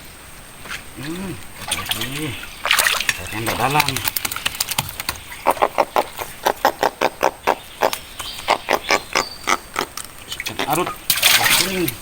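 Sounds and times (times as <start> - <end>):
animal croaking rapidly: 5.2 - 11.9.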